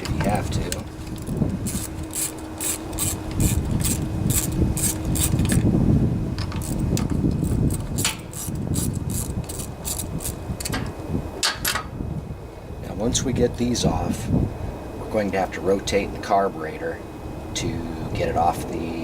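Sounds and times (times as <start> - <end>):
tool rubbing and handling noise: 0.0 - 5.7, 6.4 - 10.4
socket ratchet clicking: 1.2 - 5.7, 6.4 - 10.8.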